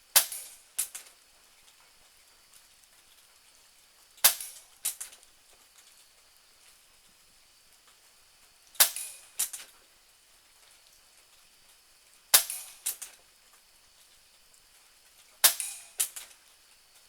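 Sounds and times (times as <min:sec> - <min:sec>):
air pistol cracks: 0:08.8 - 0:09.6, 0:12.4 - 0:13.1, 0:15.4 - 0:16.3.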